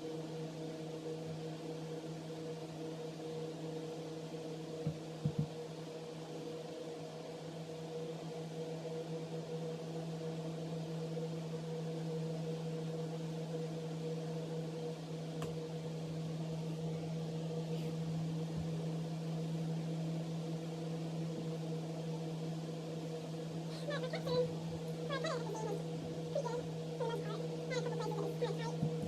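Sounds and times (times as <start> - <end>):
mechanical hum: 0.0 - 29.0.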